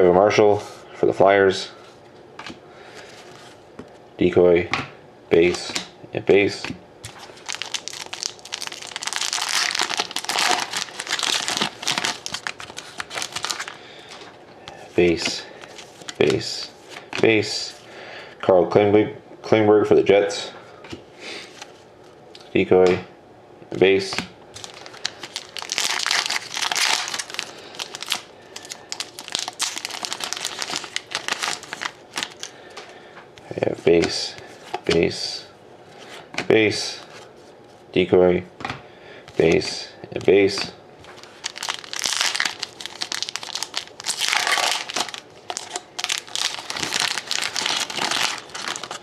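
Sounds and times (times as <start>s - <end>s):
cards being handled: 6.6s - 17.4s, 39.3s - 49.0s
wrapper tearing and crinkling: 7.1s - 14.2s, 24.6s - 32.5s, 41.1s - 49.0s.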